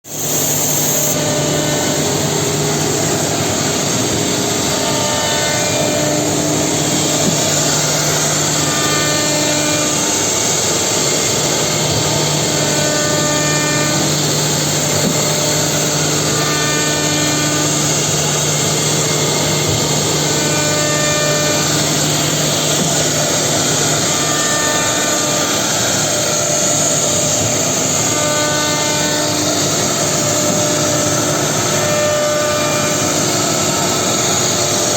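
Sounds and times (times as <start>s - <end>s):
cnc router milling wood: 0.1s - 34.9s.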